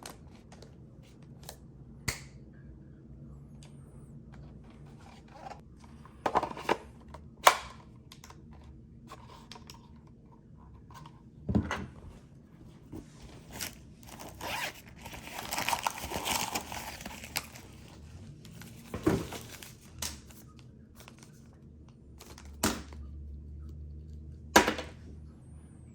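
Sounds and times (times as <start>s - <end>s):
packaging crinkling: 13.4s - 21.4s.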